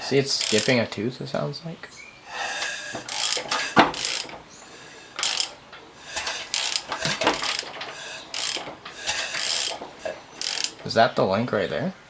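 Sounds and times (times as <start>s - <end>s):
engine ratcheting clicks and clatter: 0.0s - 1.0s, 2.3s - 11.2s.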